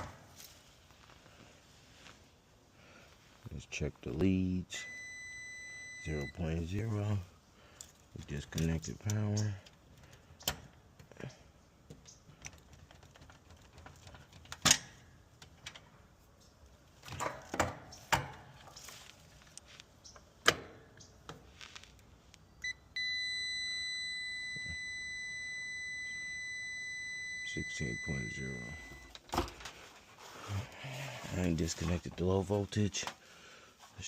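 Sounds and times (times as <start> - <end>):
multimeter continuity beep: 4.7 - 6.6, 22.6 - 29.1.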